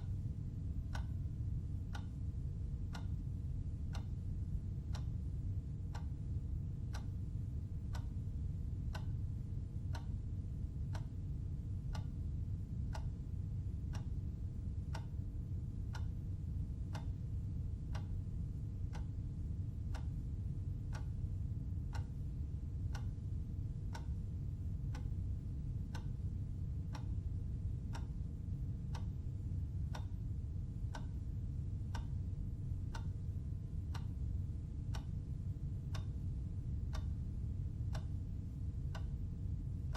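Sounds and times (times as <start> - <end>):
low background hum: 0.0 - 39.9
clock ticking: 0.9 - 1.2, 2.9 - 3.2, 3.9 - 4.1, 4.8 - 5.2, 5.9 - 6.2, 7.9 - 9.2, 9.9 - 10.2, 10.8 - 11.2, 11.8 - 13.2, 13.9 - 14.2, 14.9 - 15.2, 15.9 - 16.2, 16.9 - 19.2, 19.9 - 20.2, 20.8 - 21.3, 21.9 - 26.2, 26.8 - 28.3, 28.9 - 29.2, 29.8 - 30.2, 30.8 - 31.2, 31.9 - 32.2, 33.9 - 34.2, 34.9 - 36.2, 36.8 - 37.3, 37.9 - 38.2, 38.9 - 39.3.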